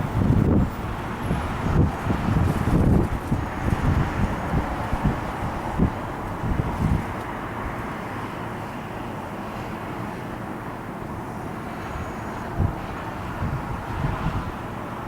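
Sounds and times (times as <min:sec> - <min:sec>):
wind buffeting microphone: 0:00.0 - 0:07.8, 0:11.8 - 0:15.0
distant aircraft roar: 0:00.0 - 0:15.0.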